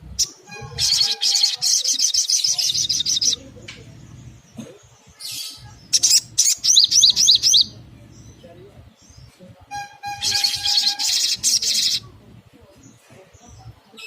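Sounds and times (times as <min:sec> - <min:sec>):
sunbird trilling and chirping: 0:00.0 - 0:14.0.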